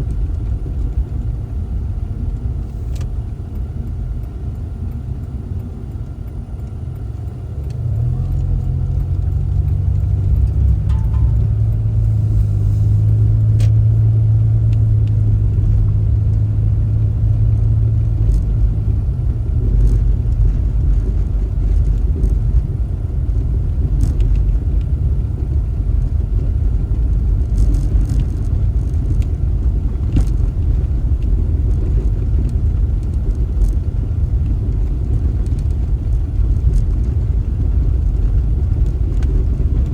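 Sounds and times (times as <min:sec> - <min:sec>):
car engine: 0:00.0 - 0:39.9
road rumble: 0:00.0 - 0:39.9.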